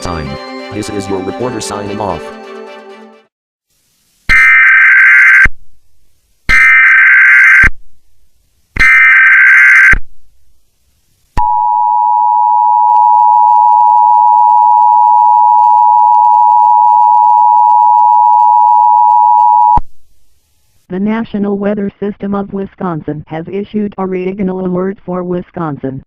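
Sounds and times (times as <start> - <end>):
digital header data bursts: 8.8 - 9.9.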